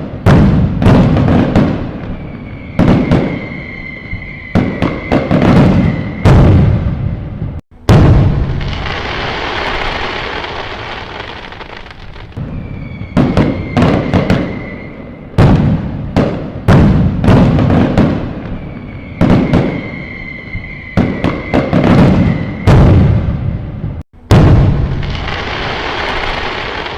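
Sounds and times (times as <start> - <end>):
fireworks bangs: 0.0 - 26.9
fireworks crackling: 0.0 - 26.9
steady high whistle: 2.1 - 6.4, 12.4 - 15.4, 18.5 - 22.9.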